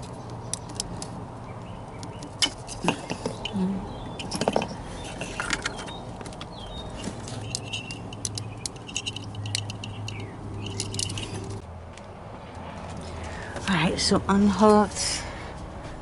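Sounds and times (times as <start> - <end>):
plastic connectors clicking: 2.0 - 11.6.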